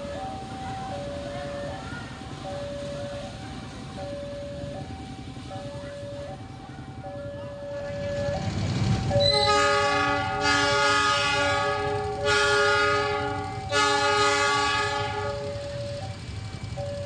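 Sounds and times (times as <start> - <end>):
level crossing warning signal: 0.0 - 17.0
train air horn blast: 9.2 - 15.6.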